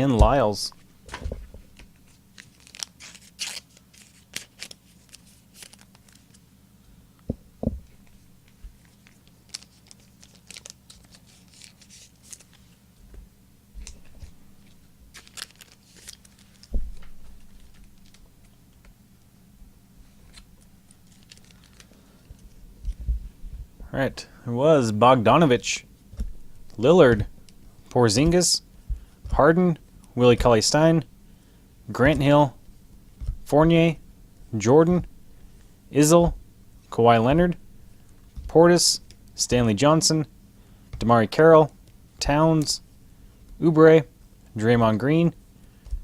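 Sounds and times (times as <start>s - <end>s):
faint steady hum: 0.0s - 46.0s
cards and wrappers rustling: 0.1s - 6.4s, 8.5s - 12.8s, 13.8s - 18.6s, 20.1s - 23.3s, 25.2s - 34.0s.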